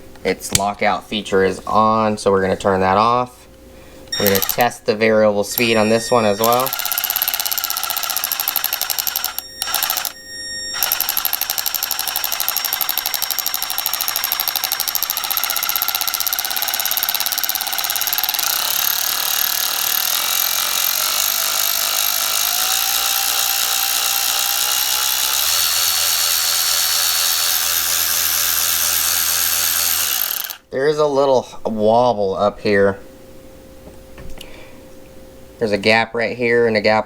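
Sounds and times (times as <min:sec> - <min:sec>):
cordless ratchet whining and rattling: 0:04.1 - 0:04.8, 0:05.5 - 0:30.7.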